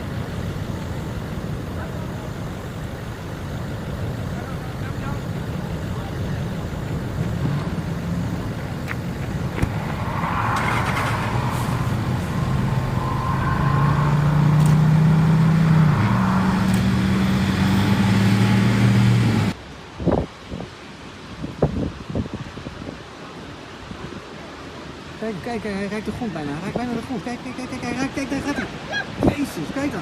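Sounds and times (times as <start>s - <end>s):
car engine droning: 0.0s - 19.6s.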